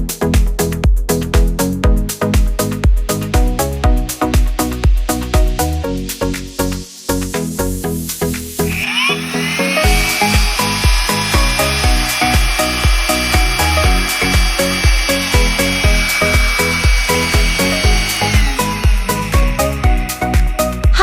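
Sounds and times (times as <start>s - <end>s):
background music with steady beat: 0.0s - 21.0s
vacuum cleaner motor whining: 8.6s - 21.0s.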